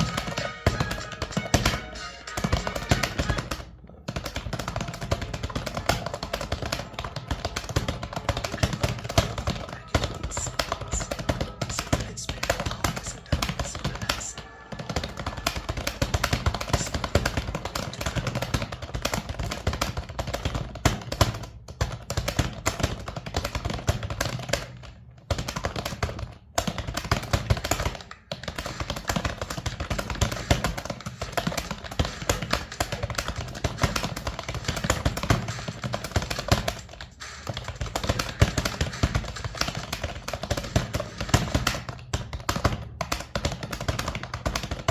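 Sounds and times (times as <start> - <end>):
computer keyboard typing: 0.0 - 44.9.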